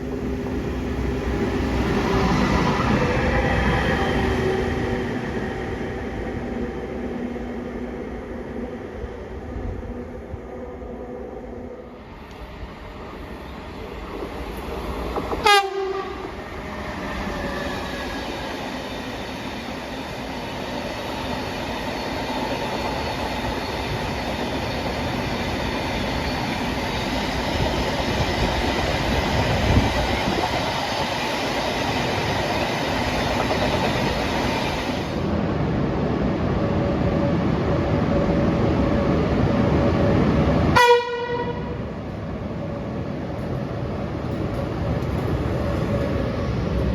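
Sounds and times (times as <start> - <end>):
train running on rails: 0.0 - 46.9
train horn blasts: 15.4 - 16.3, 40.8 - 41.8.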